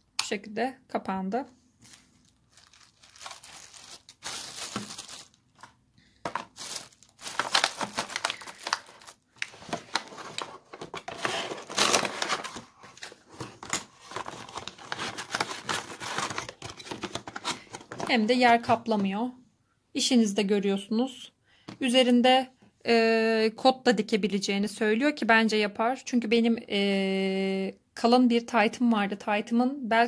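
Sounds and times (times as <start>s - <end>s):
packaging crinkling and rustling: 1.8s - 18.2s.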